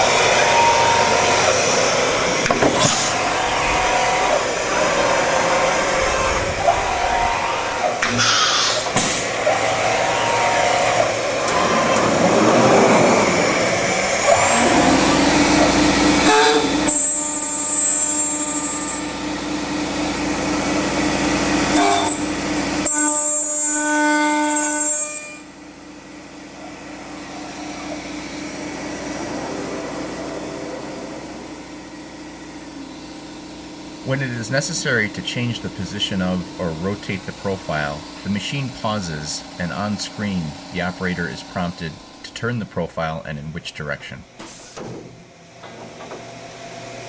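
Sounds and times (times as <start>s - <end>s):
short high whines: 0.0s - 19.4s, 26.4s - 34.0s
milling machine cutting metal: 0.0s - 25.4s
machine hum: 0.0s - 44.4s.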